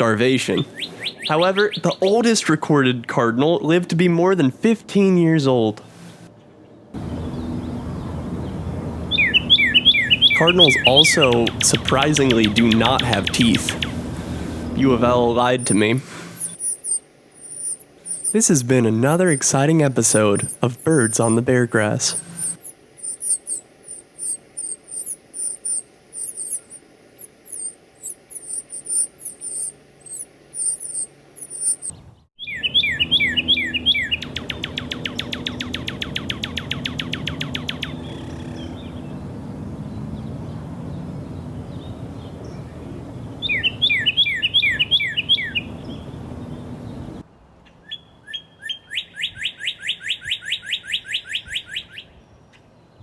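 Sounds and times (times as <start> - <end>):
high thin bird chirping: 0.0 - 2.4, 9.1 - 39.2, 41.0 - 47.2
bird whistles breaking into trill: 9.1 - 12.4.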